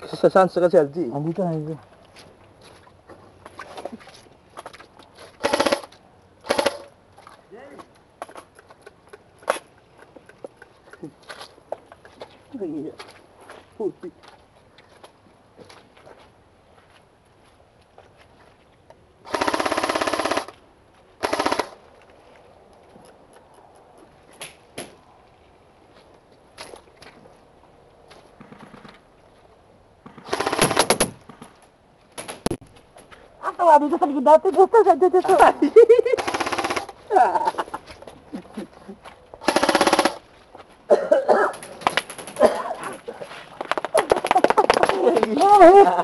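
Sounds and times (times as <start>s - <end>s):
airsoft gun firing full auto: 5.4s - 6.9s, 19.3s - 20.5s, 21.2s - 21.8s, 30.2s - 31.1s, 39.4s - 40.2s.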